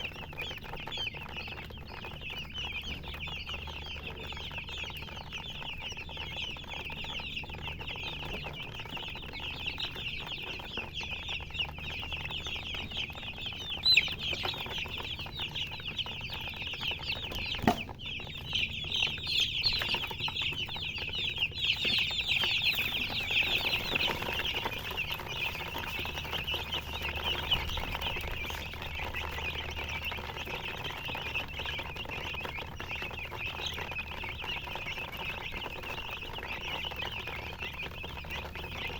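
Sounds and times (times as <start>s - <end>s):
chicks peeping: 0.0s - 38.9s
sharp knock: 17.4s - 18.0s.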